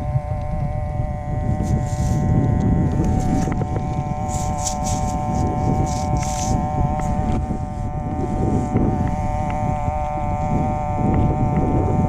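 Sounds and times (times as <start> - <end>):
steady hum of tones: 0.0 - 12.0
wind rumbling on microphone: 0.0 - 12.0.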